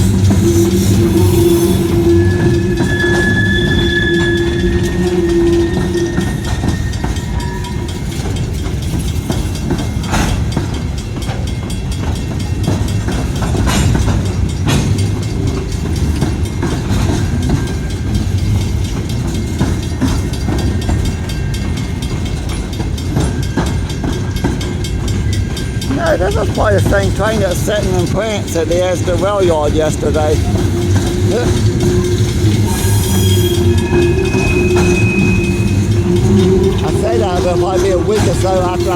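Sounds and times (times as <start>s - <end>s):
faint wheel squeal: 0.0s - 8.0s, 30.2s - 38.9s
train cars rumbling: 0.0s - 38.9s
wheels clicking over rail joints: 0.0s - 38.9s.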